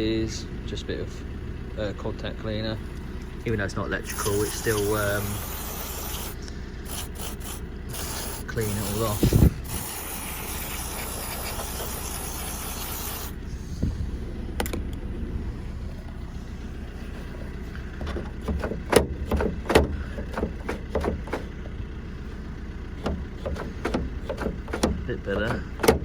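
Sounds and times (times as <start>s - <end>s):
aerosol spray hissing: 4.1s - 13.4s
latch clicks and knocks: 18.0s - 21.7s, 23.0s - 26.0s.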